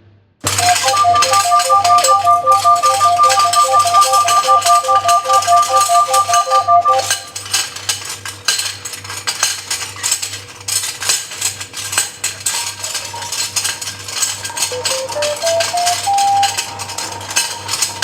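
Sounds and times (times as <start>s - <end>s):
recorder notes: 0.4s - 7.3s
clatter of clicks and rattles: 0.4s - 18.0s.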